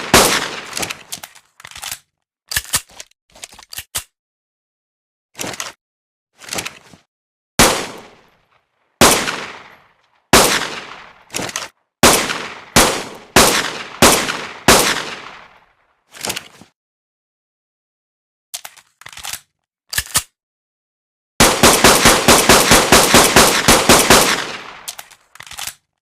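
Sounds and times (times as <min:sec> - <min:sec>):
pistol gunshots with echo: 0:00.0 - 0:00.8, 0:07.6 - 0:08.2, 0:09.0 - 0:11.3, 0:12.0 - 0:15.6, 0:21.4 - 0:24.9.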